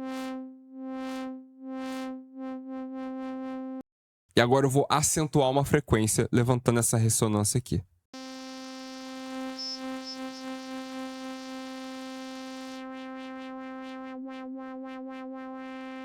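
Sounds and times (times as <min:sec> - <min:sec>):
buzzy synthesizer tone: 0:00.0 - 0:03.8, 0:08.2 - 0:16.0.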